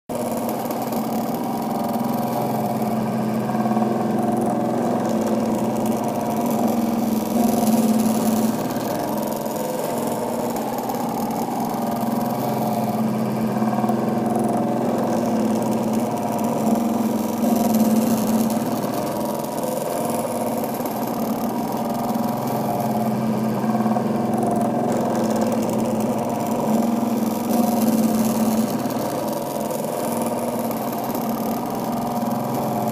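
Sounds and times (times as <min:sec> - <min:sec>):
stepper motors buzzing hum: 0:00.1 - 0:32.9.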